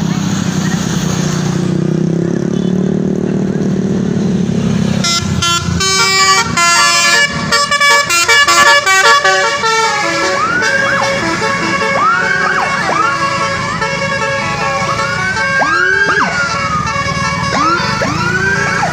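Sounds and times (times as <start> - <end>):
bus engine running: 0.0 - 18.9
musical horn playing a melody: 5.0 - 18.9
siren-like whoops: 11.8 - 13.8, 14.5 - 16.9, 17.5 - 18.9.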